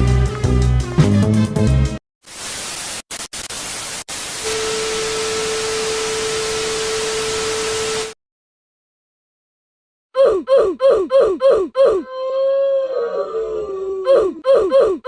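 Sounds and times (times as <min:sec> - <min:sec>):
static hiss: 0:02.2 - 0:08.2.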